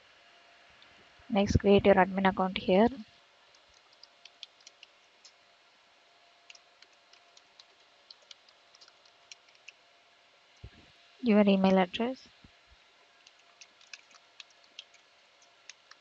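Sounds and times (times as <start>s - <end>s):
faint steady hum: 0.0s - 16.0s
computer keys typing: 3.6s - 5.3s, 6.5s - 9.8s, 13.2s - 16.0s.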